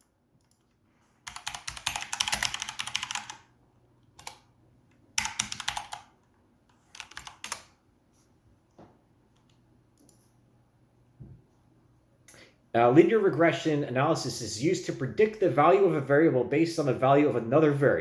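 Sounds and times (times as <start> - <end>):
typing on keyboard: 0.0 - 3.5, 4.1 - 4.5, 5.2 - 7.7.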